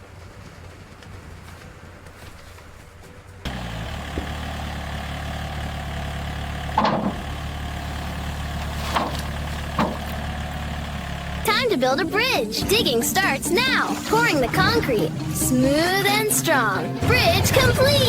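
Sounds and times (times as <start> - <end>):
construction machine engine idling: 0.0 - 18.0.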